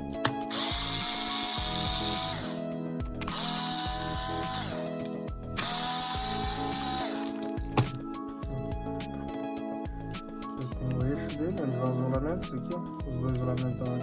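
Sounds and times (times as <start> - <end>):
background music: 0.0 - 14.0
power screwdriver whirring: 0.2 - 2.6, 3.2 - 8.1.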